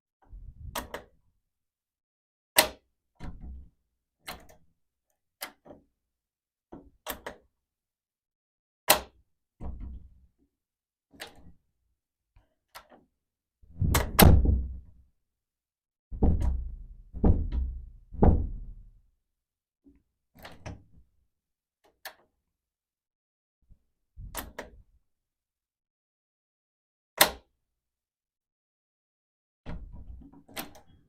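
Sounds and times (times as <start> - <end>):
heavy wooden door shutting: 13.8 - 14.9, 16.2 - 18.9.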